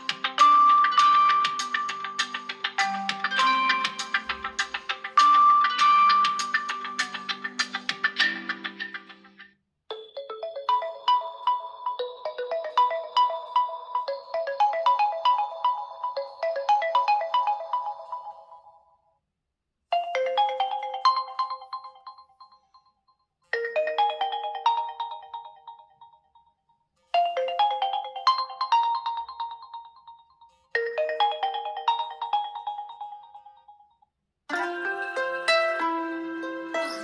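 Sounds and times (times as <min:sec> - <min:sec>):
short melodic ringtone phrase: 0:00.0 - 0:07.6, 0:34.5 - 0:37.0
fast ringtone melody: 0:00.0 - 0:09.2, 0:10.0 - 0:18.6, 0:30.9 - 0:33.5, 0:34.5 - 0:37.0.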